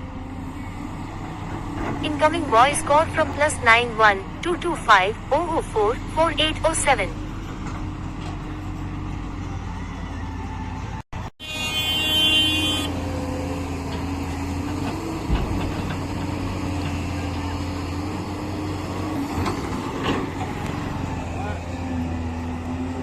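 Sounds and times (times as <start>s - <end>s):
heavy machinery engine running: 0.0s - 11.3s, 12.0s - 23.0s
vehicle horn: 11.3s - 13.4s.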